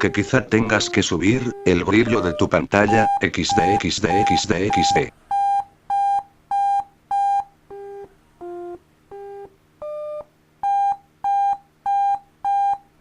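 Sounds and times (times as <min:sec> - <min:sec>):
electronic beep tones: 0:00.0 - 0:07.5, 0:09.2 - 0:12.8.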